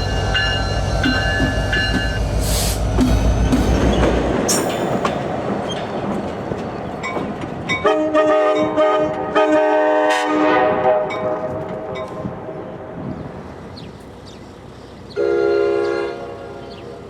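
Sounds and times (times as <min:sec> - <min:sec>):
train rumble and rail noise: 0:00.0 - 0:17.0
locomotive air horn chord: 0:07.8 - 0:11.4, 0:15.2 - 0:16.9.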